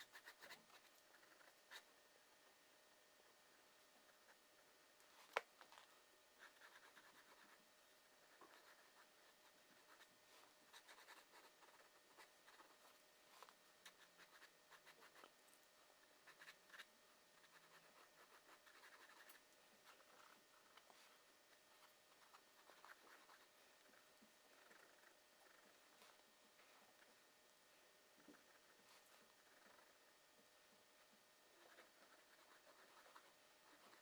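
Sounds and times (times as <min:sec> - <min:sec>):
drawing tool scratching paper: 0:10.7 - 0:15.3.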